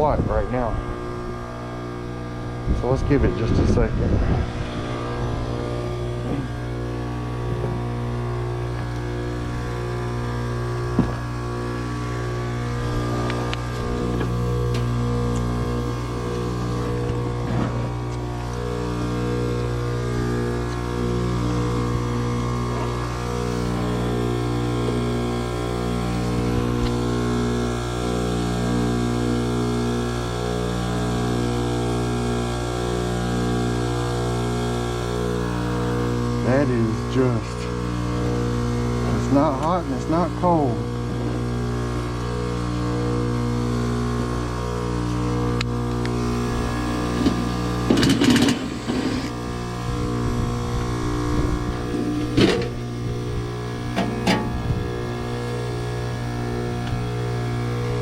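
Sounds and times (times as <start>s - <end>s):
heat pump unit humming: 0.0s - 58.0s
clattering rattles: 47.2s - 49.3s.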